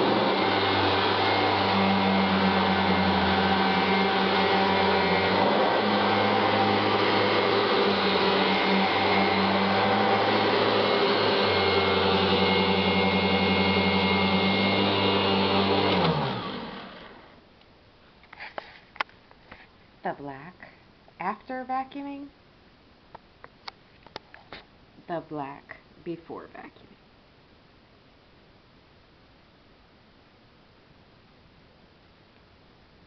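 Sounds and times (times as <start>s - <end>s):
vacuum cleaner motor hum: 0.0s - 17.4s.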